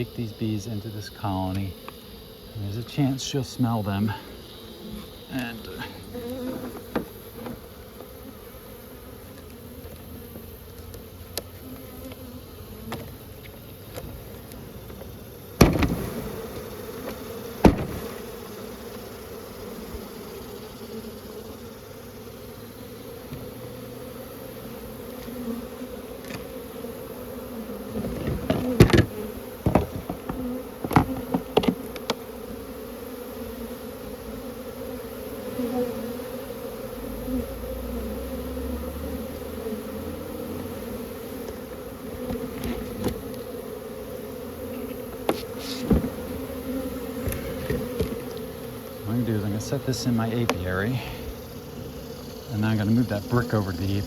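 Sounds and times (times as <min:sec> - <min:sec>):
honeybees buzzing: 0:00.0 - 0:54.0
sharp knocks on hive box: 0:06.2 - 0:07.6, 0:14.9 - 0:19.1, 0:27.8 - 0:32.3, 0:41.4 - 0:43.5, 0:45.0 - 0:48.7.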